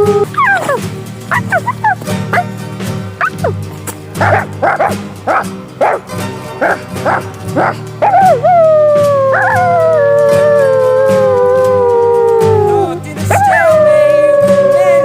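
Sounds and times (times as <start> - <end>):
person imitating wolf howl: 0.0 - 2.0, 7.6 - 15.0
person imitating wolf yips and barks: 0.0 - 2.5, 3.2 - 3.6, 4.2 - 6.0, 6.6 - 15.0
background music: 0.0 - 15.0.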